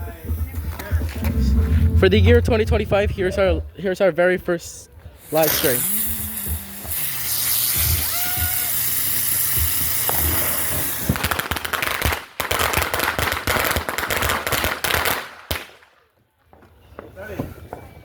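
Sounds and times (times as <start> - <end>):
firework hissing and spraying: 5.4 - 11.3.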